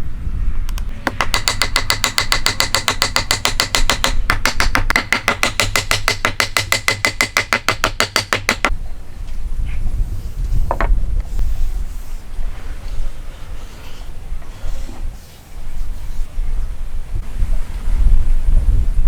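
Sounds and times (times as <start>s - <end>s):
rapid metallic hammer strikes: 1.0s - 8.7s.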